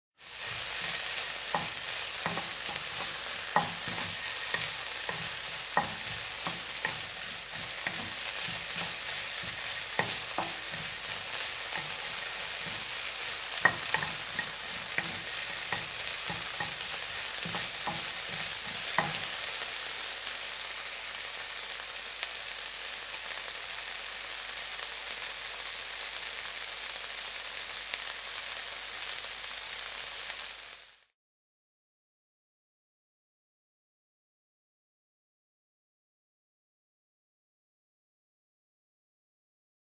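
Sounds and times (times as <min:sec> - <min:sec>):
food sizzling in a pan: 0:00.2 - 0:31.2.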